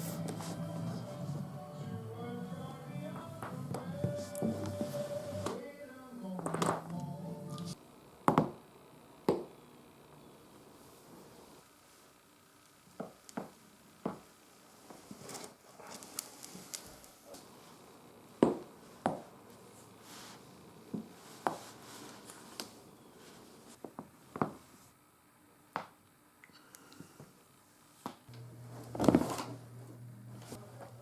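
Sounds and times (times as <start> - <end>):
clothing rustling: 21.0 - 24.9.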